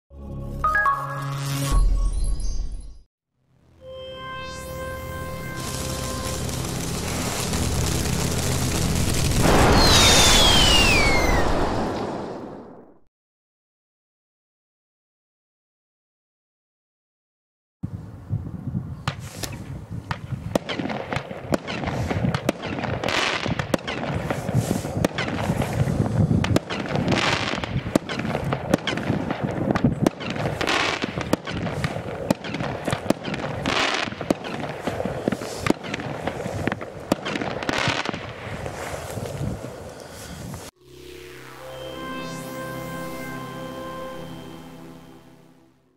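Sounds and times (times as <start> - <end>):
firework hissing: 5.1 - 12.6, 21.7 - 29.3, 30.1 - 37.0
firework launch cracks and bangs: 5.6 - 13.0, 19.1 - 39.7.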